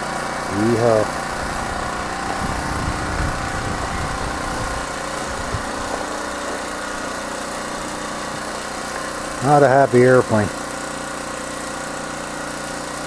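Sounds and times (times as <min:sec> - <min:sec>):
engine drone: 0:00.0 - 0:13.0
low rumbling: 0:00.7 - 0:08.4.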